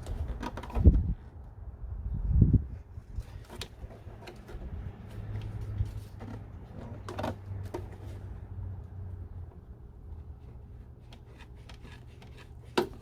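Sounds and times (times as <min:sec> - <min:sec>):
rubber seal scraping: 0:10.8 - 0:13.0.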